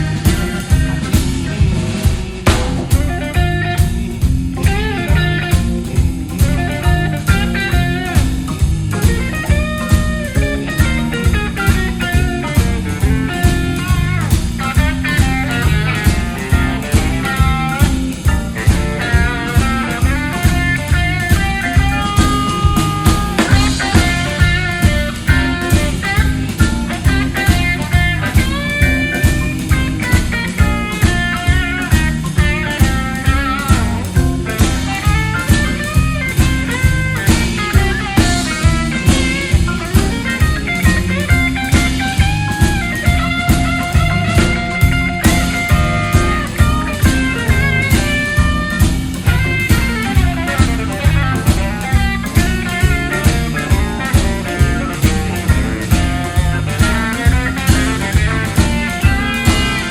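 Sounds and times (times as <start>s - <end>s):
blues-rock band playing: 0.0s - 59.9s.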